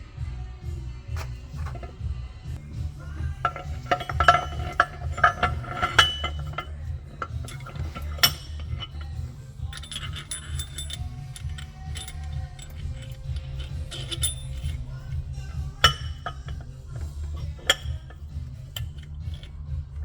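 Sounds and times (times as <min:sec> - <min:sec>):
background music with low beat: 0:00.0 - 0:20.0
metal parts clinking: 0:01.2 - 0:02.0, 0:02.9 - 0:20.0.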